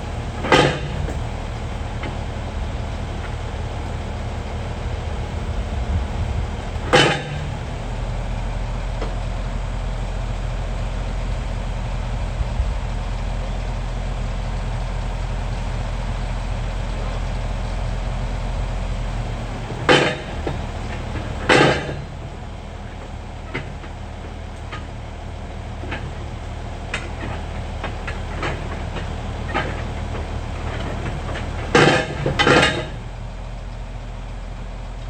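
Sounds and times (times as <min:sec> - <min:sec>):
diesel engine running: 0:00.0 - 0:35.0
loud knocks: 0:00.4 - 0:01.4, 0:19.5 - 0:22.2.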